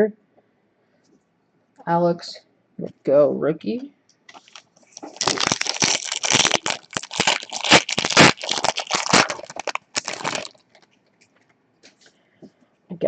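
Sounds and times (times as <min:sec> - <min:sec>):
foil wrapper crinkling: 0:04.3 - 0:10.9.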